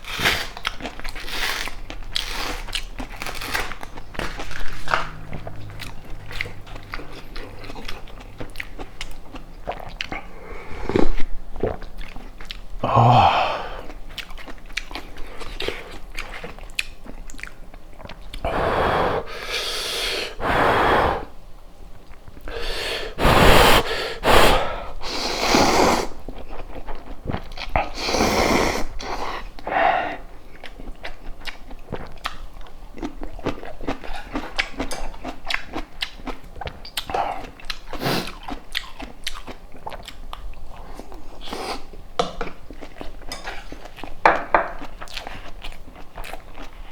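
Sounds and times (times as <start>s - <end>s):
person chewing food: 0.0s - 21.3s, 22.0s - 46.9s
loud noisy eating bursts: 1.2s - 9.2s, 18.4s - 21.4s, 22.5s - 26.2s.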